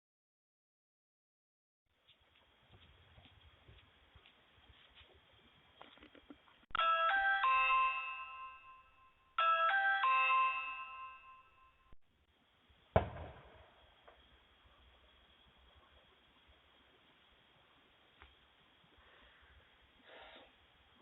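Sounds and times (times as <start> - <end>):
doorbell chime: 6.7 - 12.0
sharp thump: 13.0 - 13.6.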